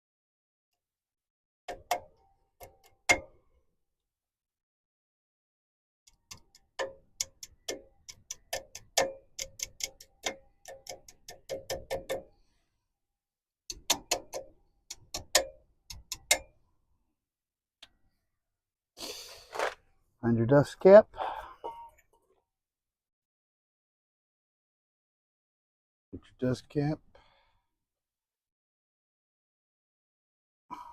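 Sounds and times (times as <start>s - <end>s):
metal taps and clicks of hand tools: 1.7s - 3.4s, 6.1s - 12.3s, 13.7s - 16.5s.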